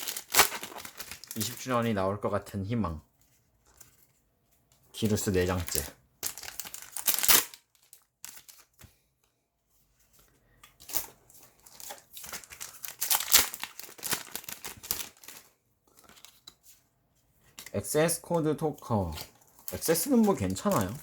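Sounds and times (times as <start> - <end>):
foil wrapper crinkling and tearing: 0.0 - 1.9, 5.4 - 8.8, 10.8 - 16.5, 19.0 - 21.0.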